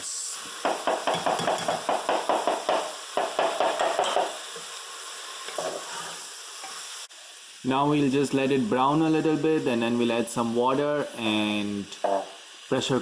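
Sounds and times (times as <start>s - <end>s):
meat sizzling in hot oil: 0.0s - 13.0s
spoon knocking and scraping pot: 0.7s - 4.4s.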